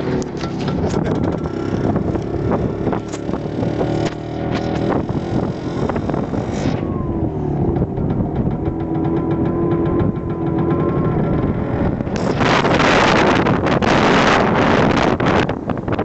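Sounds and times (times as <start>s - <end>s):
rattles and knocks: 0.0s - 2.1s, 7.6s - 10.7s
rushing noise: 0.0s - 16.0s
vehicle engine running: 0.0s - 16.0s.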